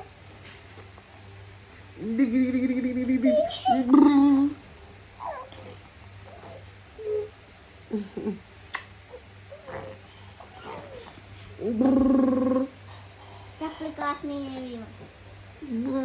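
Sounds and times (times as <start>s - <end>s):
woman's voice: 2.0s - 4.6s, 15.6s - 16.0s.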